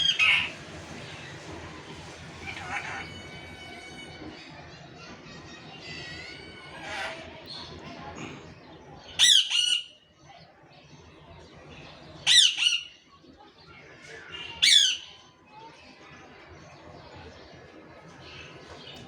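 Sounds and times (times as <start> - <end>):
parakeet squawking: 0.0 - 0.5.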